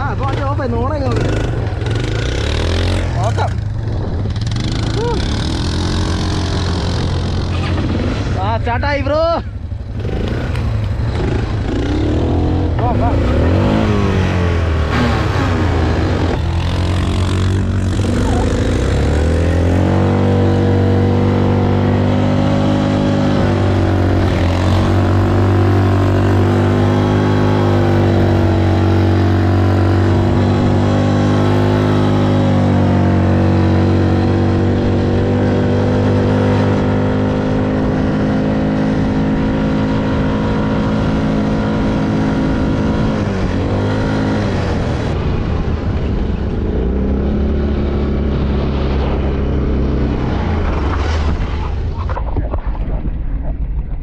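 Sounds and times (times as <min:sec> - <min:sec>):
quad bike engine revving: 0:00.0 - 0:45.6.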